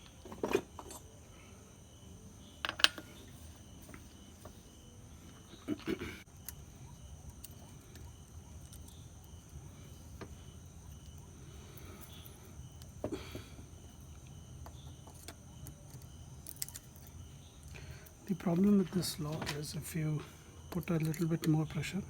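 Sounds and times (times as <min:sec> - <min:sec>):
insects chirping: 0:00.0 - 0:22.0
metal parts clicking and tapping: 0:02.6 - 0:03.1.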